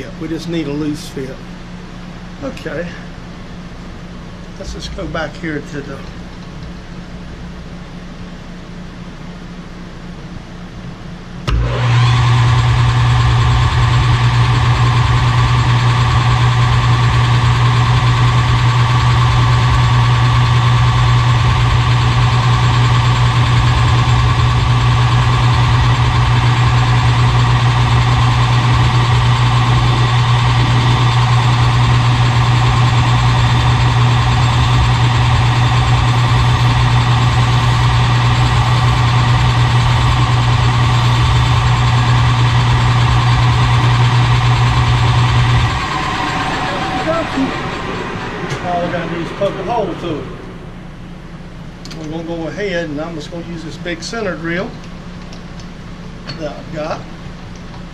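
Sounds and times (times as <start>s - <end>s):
metal lathe motor humming: 11.5s - 52.2s.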